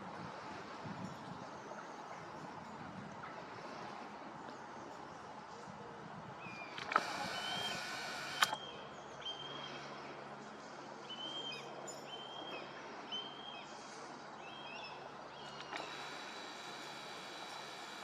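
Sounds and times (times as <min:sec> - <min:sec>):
outdoor background noise: 0:00.0 - 0:18.0
sharp clicks: 0:06.7 - 0:08.6, 0:15.5 - 0:18.0.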